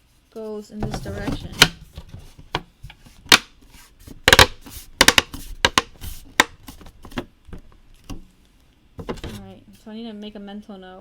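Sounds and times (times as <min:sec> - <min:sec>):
plastic parts clicking together: 0:04.2 - 0:07.2.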